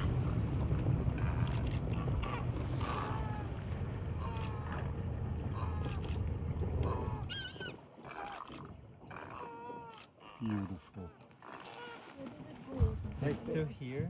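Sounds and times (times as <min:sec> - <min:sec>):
bird honking calls: 0:00.0 - 0:08.4
low motor rumble: 0:00.0 - 0:09.6.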